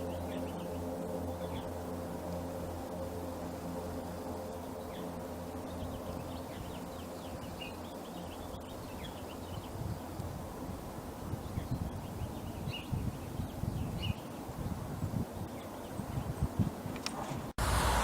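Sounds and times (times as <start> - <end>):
low droning hum: 0.0 - 11.9
low rumbles: 17.6 - 18.0.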